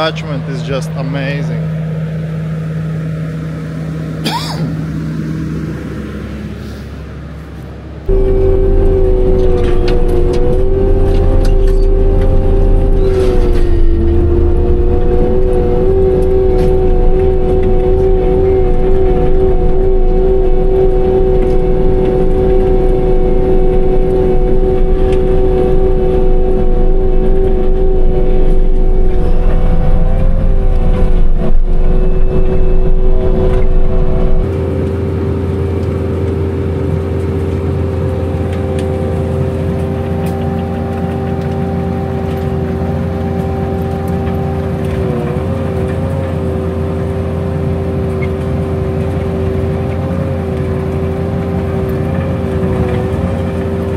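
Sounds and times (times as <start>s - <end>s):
skid-steer mulcher whining and rumbling: 0.0s - 53.9s.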